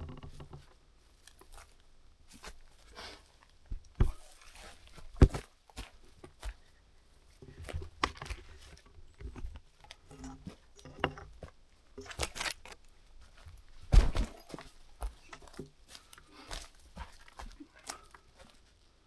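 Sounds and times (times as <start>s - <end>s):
footsteps crunching twigs: 11.4s - 18.8s
loud thump: 13.9s - 14.4s.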